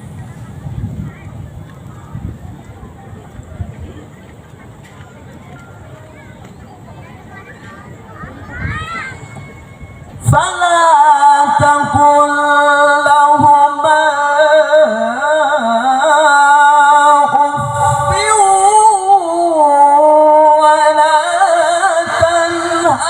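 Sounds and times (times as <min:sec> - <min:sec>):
person reciting melodically: 0:10.2 - 0:23.0.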